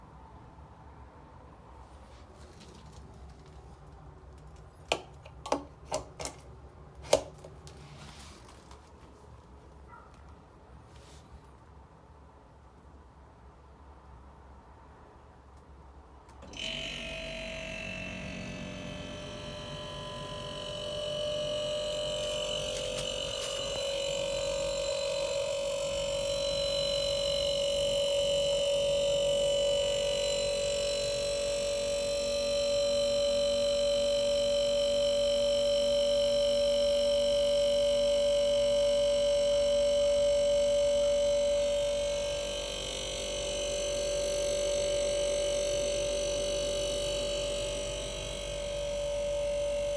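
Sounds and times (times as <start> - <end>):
refrigerator compressor hum: 16.2 - 49.9.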